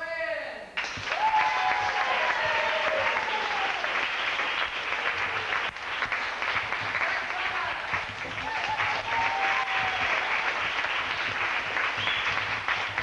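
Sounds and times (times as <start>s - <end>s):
audience applauding: 0.8s - 13.0s
person cheering: 1.1s - 4.0s, 7.0s - 10.6s.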